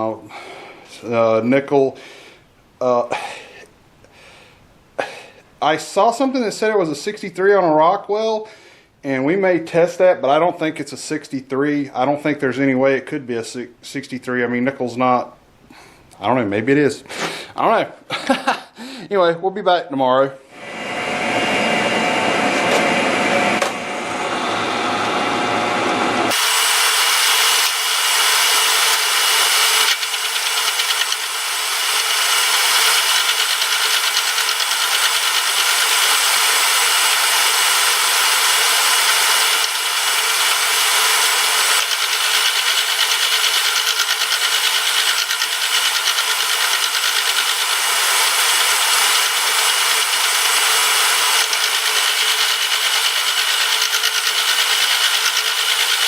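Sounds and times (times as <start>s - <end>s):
power tool cutting metal: 20.6s - 56.0s.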